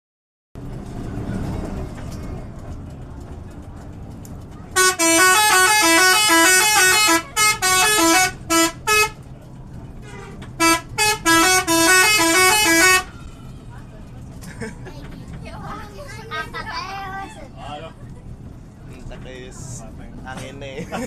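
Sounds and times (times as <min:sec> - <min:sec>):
low rumble of road traffic: 0:00.6 - 0:21.0
bus horn playing a tune: 0:04.7 - 0:09.3, 0:10.0 - 0:13.2.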